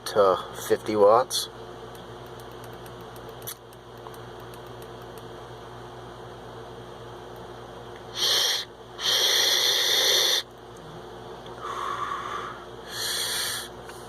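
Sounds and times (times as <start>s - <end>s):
vape hissing draws: 8.2s - 10.5s
soft breaths: 11.6s - 14.0s.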